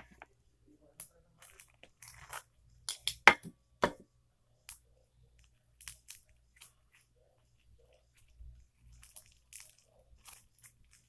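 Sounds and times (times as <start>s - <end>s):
slime crackling and popping: 5.8s - 7.1s, 8.1s - 11.0s.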